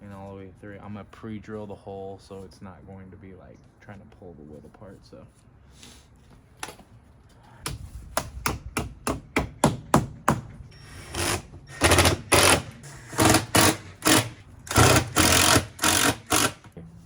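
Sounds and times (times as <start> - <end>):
power drill bursts: 10.7 - 16.6.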